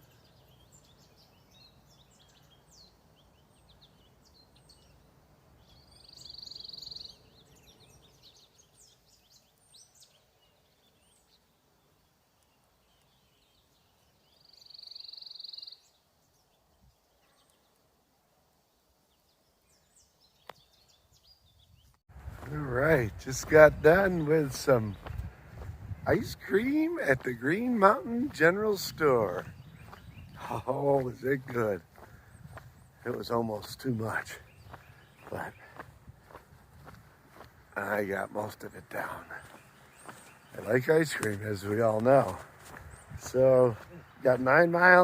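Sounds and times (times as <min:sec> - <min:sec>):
bird singing rapid high trill: 0:00.0 - 0:11.5, 0:12.8 - 0:16.6, 0:23.0 - 0:42.0
songbirds chirping: 0:00.0 - 0:45.0.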